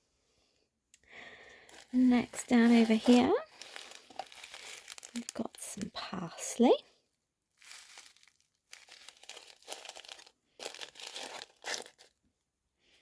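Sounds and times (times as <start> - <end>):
plastic bag crinkling: 1.5 - 6.7, 7.6 - 12.2.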